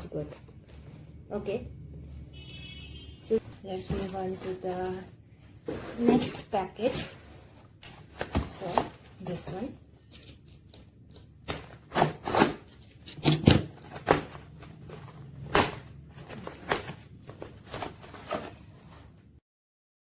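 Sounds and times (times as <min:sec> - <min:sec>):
packaging rustling and ripping: 0:05.7 - 0:19.2.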